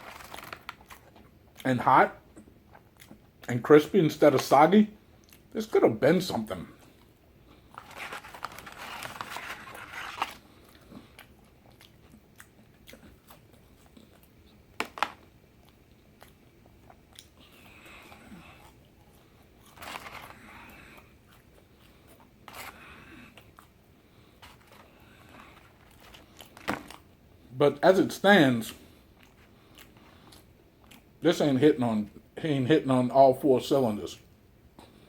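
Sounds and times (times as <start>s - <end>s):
man chewing and biting food: 0.0s - 3.6s, 5.0s - 5.6s, 6.7s - 27.5s, 28.7s - 31.2s.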